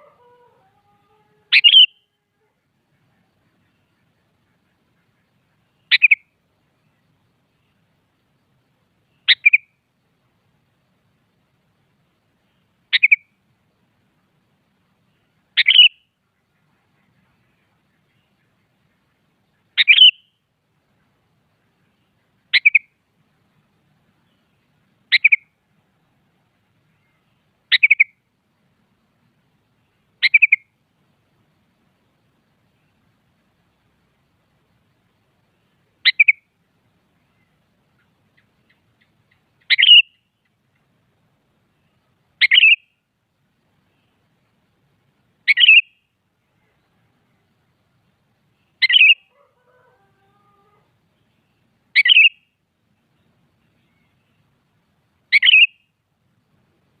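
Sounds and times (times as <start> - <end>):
bird call phrase: 0.0 - 2.2, 19.8 - 20.2, 39.7 - 40.2, 48.8 - 50.9
bird calling: 0.0 - 6.4, 9.2 - 9.8, 12.9 - 13.3, 15.6 - 20.3, 22.5 - 22.9, 25.1 - 25.5, 26.9 - 28.2, 30.2 - 30.7, 36.0 - 36.5, 37.2 - 40.4, 42.4 - 42.9, 45.5 - 46.0, 48.7 - 51.0, 51.9 - 52.4, 55.3 - 55.8.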